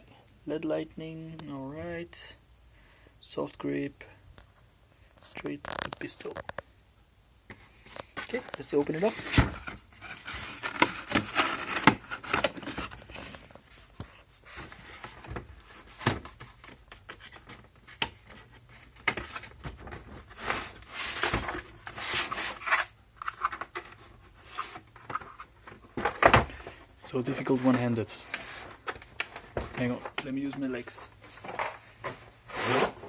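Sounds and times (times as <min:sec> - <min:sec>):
cardboard rustling and scraping: 0:07.5 - 0:33.0.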